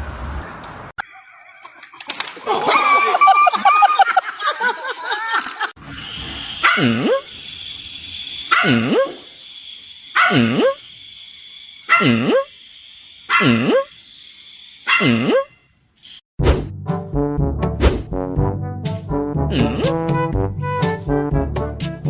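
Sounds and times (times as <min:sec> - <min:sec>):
dog barking: 0:06.6 - 0:07.2, 0:08.5 - 0:09.2, 0:10.2 - 0:10.8, 0:11.9 - 0:12.4, 0:13.3 - 0:13.8, 0:14.9 - 0:15.4.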